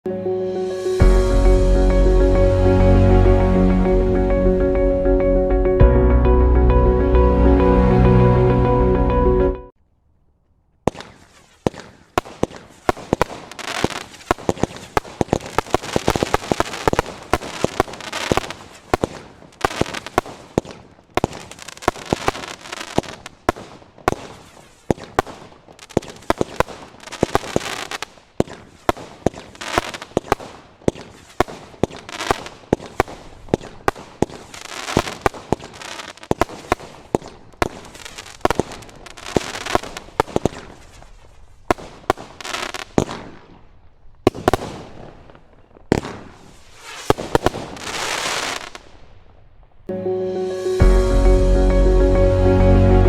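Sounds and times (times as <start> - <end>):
fireworks bangs: 10.8 - 49.8
fireworks crackle: 10.8 - 49.9.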